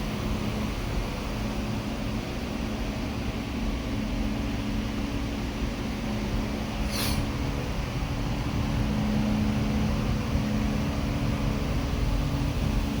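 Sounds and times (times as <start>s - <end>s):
machine hum with airy rushing: 0.0s - 13.0s
brief high hiss: 6.8s - 7.3s.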